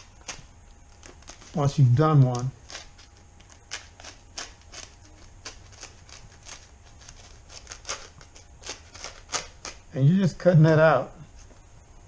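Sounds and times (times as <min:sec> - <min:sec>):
knife cutting and scraping: 0:02.2 - 0:09.8.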